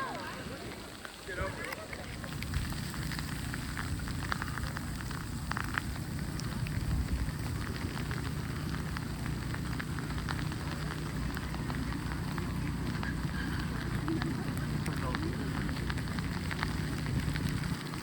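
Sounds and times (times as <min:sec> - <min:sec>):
light ticks and crackles: 0:00.0 - 0:18.0
low rumble of snowstorm: 0:02.2 - 0:18.0.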